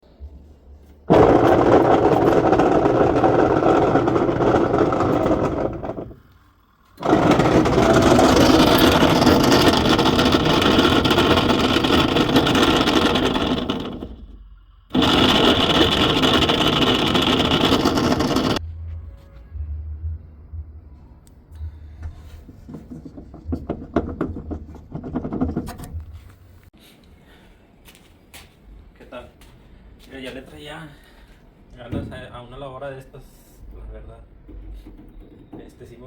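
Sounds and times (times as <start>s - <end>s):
washing machine agitating loudly: 1.1s - 6.2s, 7.0s - 18.6s.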